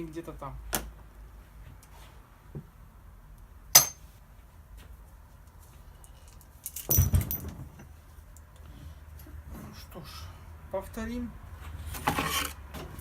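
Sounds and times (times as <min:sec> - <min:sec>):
metal parts and tools clinking: 0:06.0 - 0:07.9.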